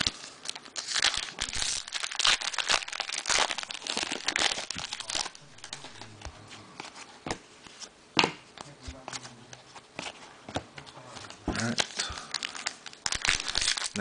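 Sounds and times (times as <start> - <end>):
foil wrappers crinkling and tearing: 0.0 - 6.2, 11.6 - 14.0.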